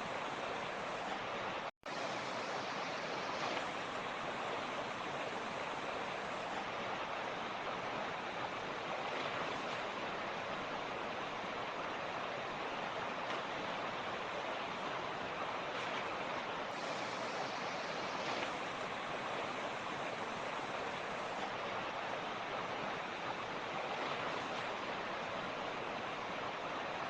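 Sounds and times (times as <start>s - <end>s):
creek water rushing: 0.0s - 27.0s.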